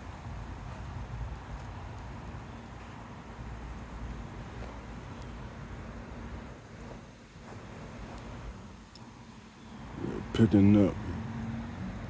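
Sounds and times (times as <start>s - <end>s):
gusty wind buffeting microphone: 0.0s - 8.8s.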